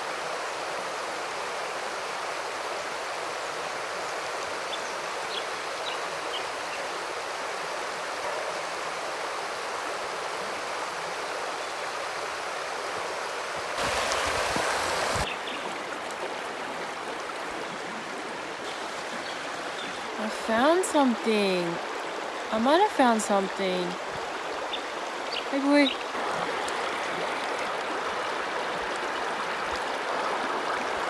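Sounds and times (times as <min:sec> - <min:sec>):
river water rushing over rocks: 0:11.9 - 0:17.6, 0:23.8 - 0:31.0.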